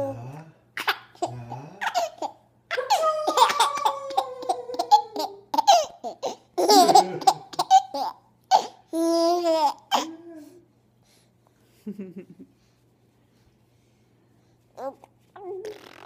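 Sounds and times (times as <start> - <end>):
baby laughing: 0.8 - 10.2.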